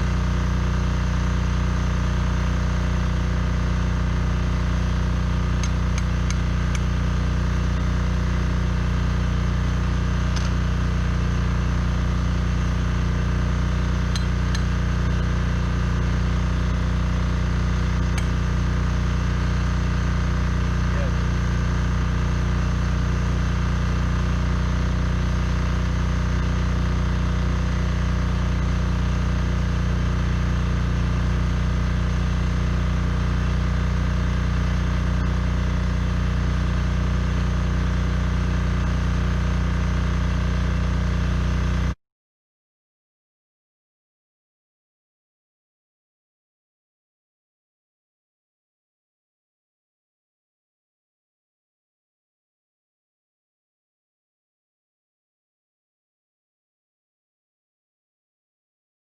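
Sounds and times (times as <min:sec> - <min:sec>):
small engine idling: 0:00.0 - 0:42.0.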